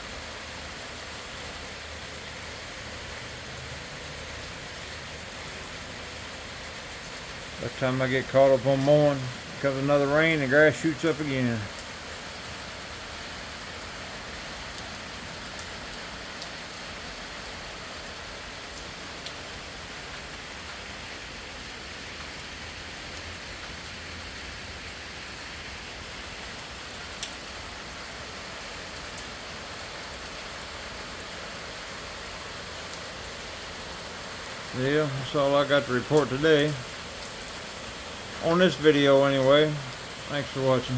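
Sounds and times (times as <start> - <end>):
gentle rain falling: 0.0 - 40.9.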